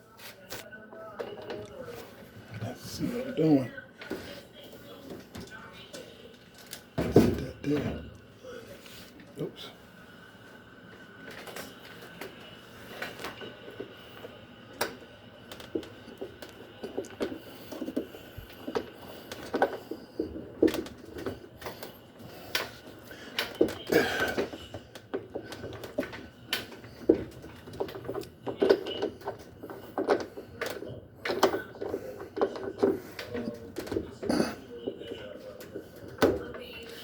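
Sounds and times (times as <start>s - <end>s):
hand tools clicking and knocking: 14.8s - 34.5s.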